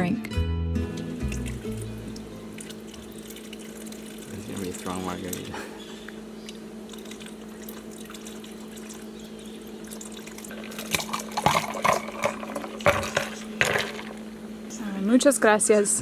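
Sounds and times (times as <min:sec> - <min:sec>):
steady low hum: 0:00.8 - 0:16.0
liquid pouring: 0:00.9 - 0:05.6, 0:06.4 - 0:14.4.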